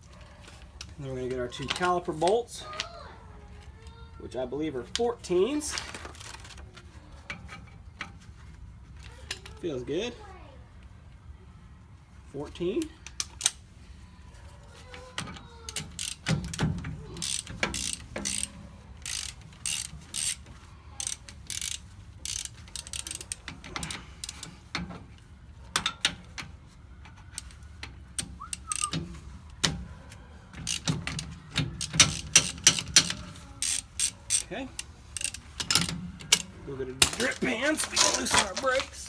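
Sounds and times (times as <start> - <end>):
ratchet wrench clicking: 15.7 - 16.6, 17.2 - 24.5, 28.2 - 28.9, 30.6 - 38.5.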